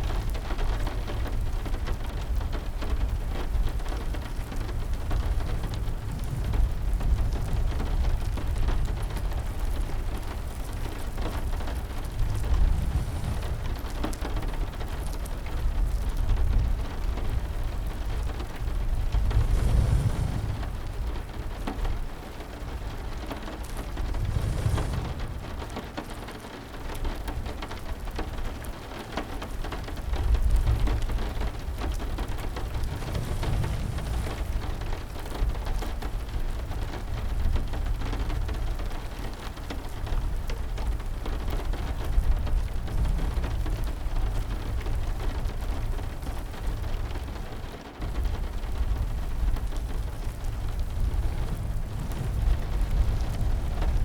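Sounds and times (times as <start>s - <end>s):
heavy rain: 0.0s - 54.0s
deep low rumble: 3.0s - 26.4s, 30.0s - 38.6s, 48.0s - 54.0s.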